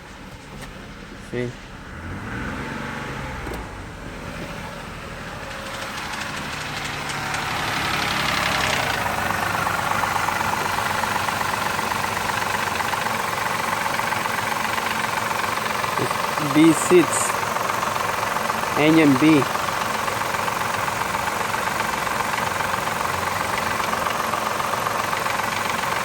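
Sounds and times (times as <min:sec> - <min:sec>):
car engine running: 0:00.0 - 0:26.0
rapid ticking knock: 0:05.5 - 0:26.0.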